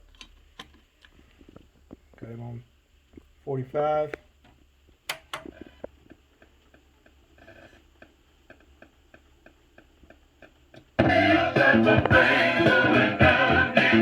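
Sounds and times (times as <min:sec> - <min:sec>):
faint ticks from record groove: 0:04.0 - 0:11.0
record player switch click: 0:05.1 - 0:05.6
choir music from speaker: 0:11.0 - 0:14.0.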